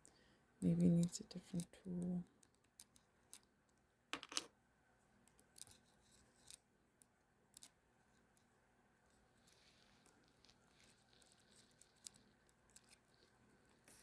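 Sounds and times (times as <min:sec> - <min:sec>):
small metal parts clicking: 0:05.3 - 0:06.6, 0:09.4 - 0:14.0.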